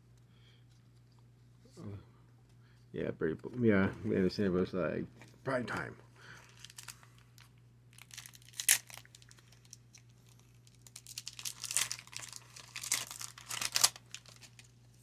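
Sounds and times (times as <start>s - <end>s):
wrapper crinkling and tearing: 6.4s - 15.0s.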